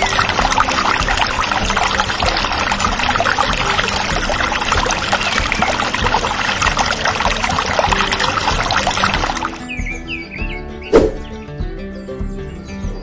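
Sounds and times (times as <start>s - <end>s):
water pouring and splashing: 0.0s - 10.1s.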